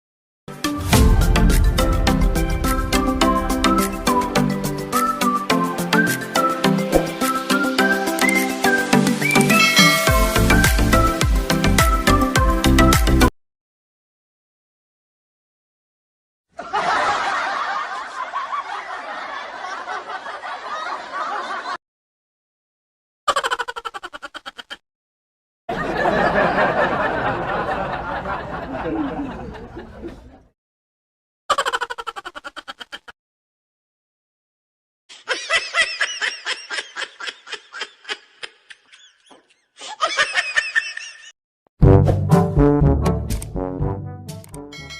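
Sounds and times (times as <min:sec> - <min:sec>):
loud music: 0:00.6 - 0:13.3, 0:41.8 - 0:44.7
recorded laughter: 0:16.6 - 0:21.8, 0:25.7 - 0:30.5, 0:31.5 - 0:33.1, 0:35.1 - 0:41.4
person laughing in high-pitched bursts: 0:23.3 - 0:24.8, 0:31.5 - 0:33.2, 0:35.1 - 0:41.4.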